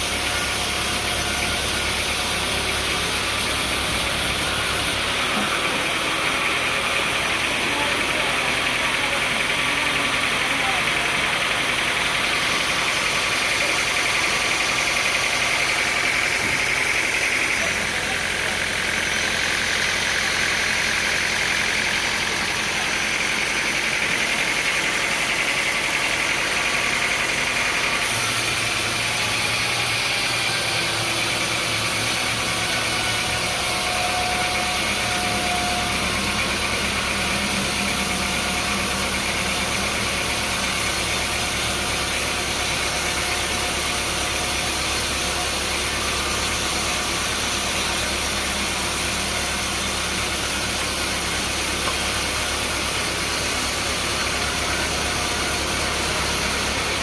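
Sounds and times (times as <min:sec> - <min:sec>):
engine running with hiss: 0:00.0 - 0:57.0.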